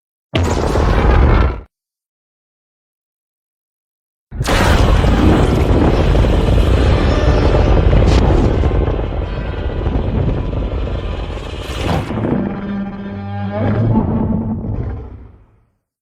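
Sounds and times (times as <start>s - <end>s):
deep rumbling monster blast: 0.4s - 1.7s, 4.3s - 15.5s
deep monster growl: 0.7s - 1.7s, 4.4s - 15.7s.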